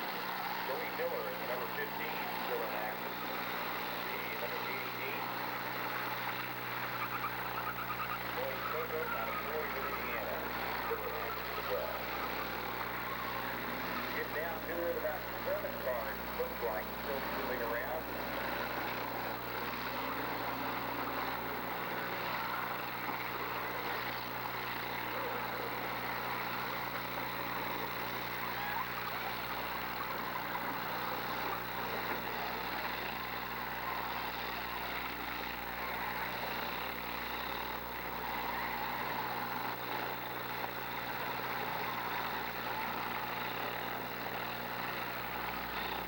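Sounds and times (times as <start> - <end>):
demolition derby car engines: 0.0 - 46.0.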